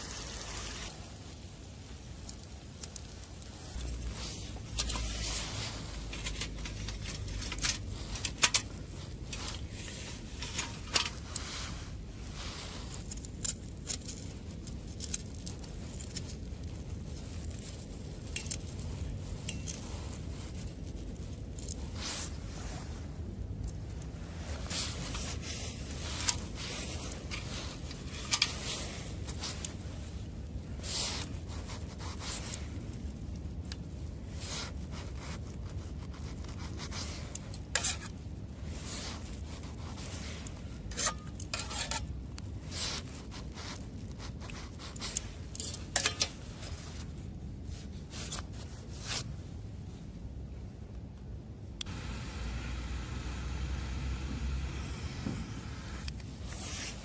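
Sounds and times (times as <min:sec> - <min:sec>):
wood fire crackling and popping: 0:00.0 - 0:47.2
rustling and scraping: 0:00.0 - 0:57.0
soft hiss: 0:00.0 - 0:57.0
steady low rumble: 0:00.0 - 0:57.0.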